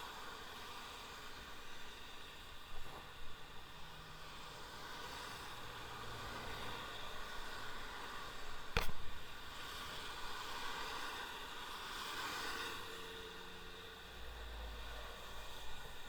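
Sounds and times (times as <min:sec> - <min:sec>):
faint hum: 0:00.0 - 0:16.0
sharp knock: 0:08.8 - 0:09.1.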